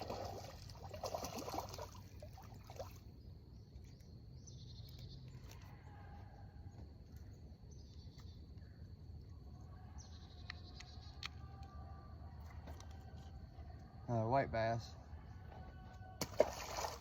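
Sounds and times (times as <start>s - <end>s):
water splashing and trickling: 0.0s - 4.0s, 16.2s - 17.0s
river ambience: 0.0s - 5.6s, 16.2s - 17.0s.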